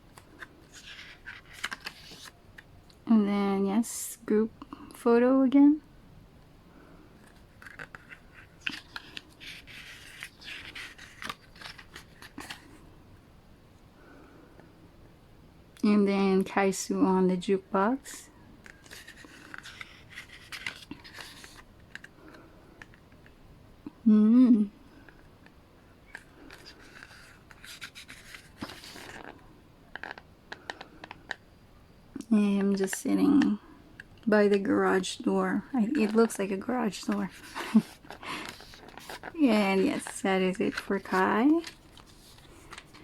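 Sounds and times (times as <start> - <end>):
paper pages rustling: 0.1 - 2.7, 7.2 - 12.8, 18.7 - 22.1, 26.1 - 30.2, 35.8 - 43.0.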